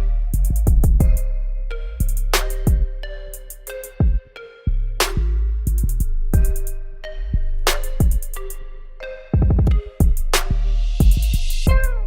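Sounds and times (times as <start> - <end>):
hip-hop background music: 0.0 - 12.0.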